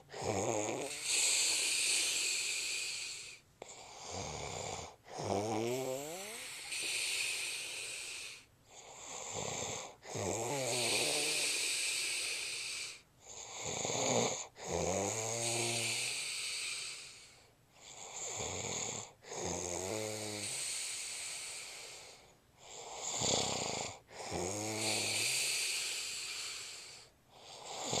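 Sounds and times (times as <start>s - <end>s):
man snoring: 0.0s - 28.0s.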